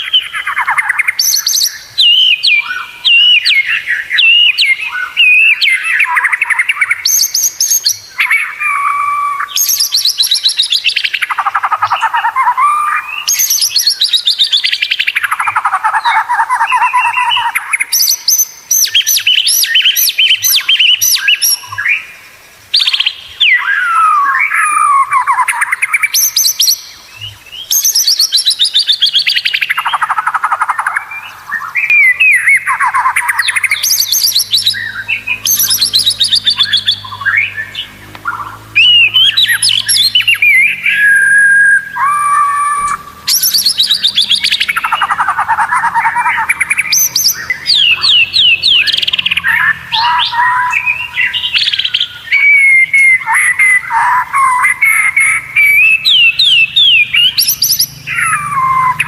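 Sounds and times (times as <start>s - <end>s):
songbird singing trills and whistles: 0.0s - 59.0s.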